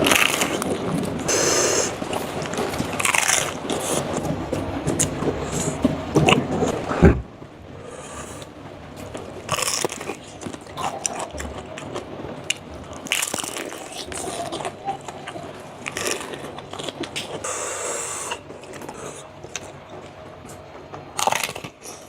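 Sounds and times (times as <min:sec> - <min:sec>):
crackles of bites: 0:00.0 - 0:04.3, 0:09.1 - 0:20.2, 0:21.2 - 0:22.0
person biting and chewing food: 0:02.8 - 0:04.2.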